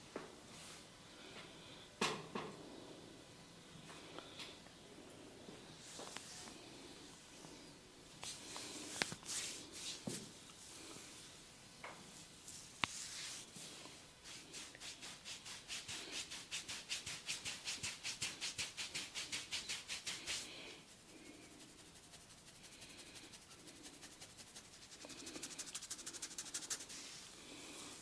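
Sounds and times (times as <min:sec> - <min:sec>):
hands rubbing over head: 0:08.2 - 0:10.0, 0:12.8 - 0:28.0.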